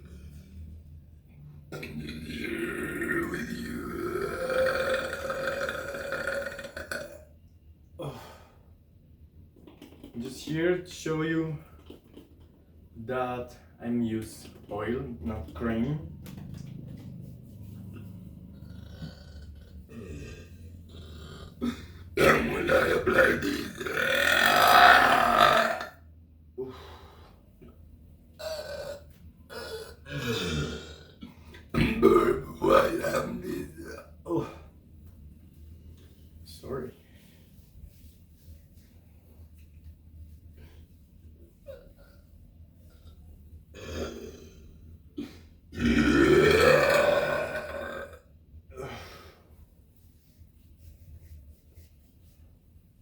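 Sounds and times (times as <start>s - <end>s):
loud long burp: 1.7s - 7.3s, 18.5s - 26.0s, 28.4s - 34.6s, 43.8s - 44.6s, 45.2s - 48.9s.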